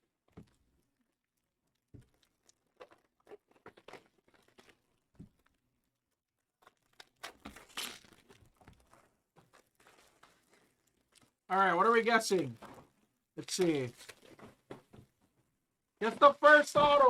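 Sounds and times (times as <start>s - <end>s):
packaging torn and crinkled: 6.6s - 8.6s, 13.7s - 14.4s.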